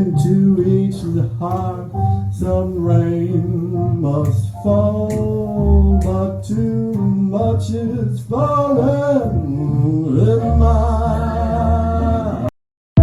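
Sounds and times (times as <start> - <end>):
man singing a slow ballad: 0.0 - 11.2
backing music: 0.0 - 12.5.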